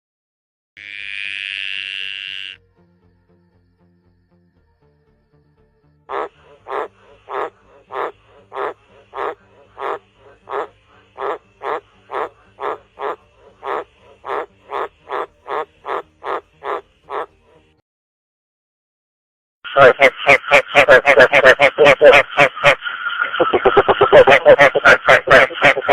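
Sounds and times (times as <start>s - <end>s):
frog croaking: 0.8s - 2.6s, 6.1s - 17.7s.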